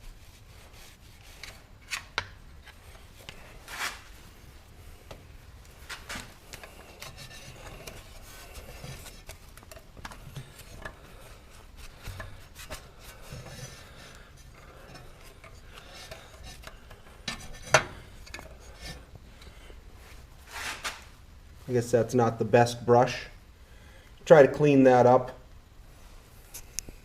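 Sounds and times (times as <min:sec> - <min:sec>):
brush scrubbing engine parts: 0:05.9 - 0:19.1.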